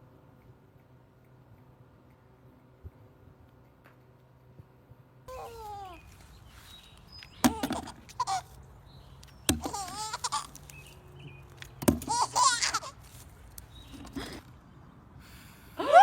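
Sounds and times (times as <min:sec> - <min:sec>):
baby squealing: 0:05.3 - 0:06.0, 0:07.5 - 0:08.5, 0:09.6 - 0:10.5, 0:12.0 - 0:13.0.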